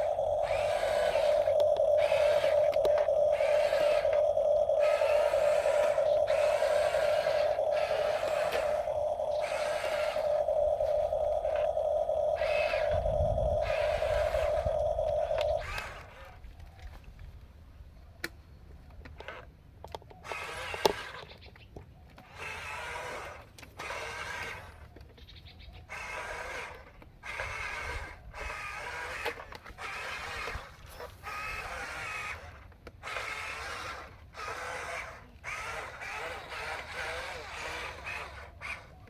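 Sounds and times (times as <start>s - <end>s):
sharp clicks: 0.0s - 15.8s
small electric gear motors whining: 0.0s - 15.9s.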